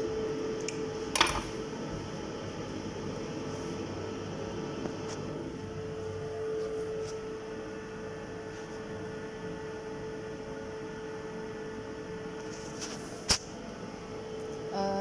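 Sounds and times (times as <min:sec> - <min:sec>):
mechanical hum: 0:00.0 - 0:15.0.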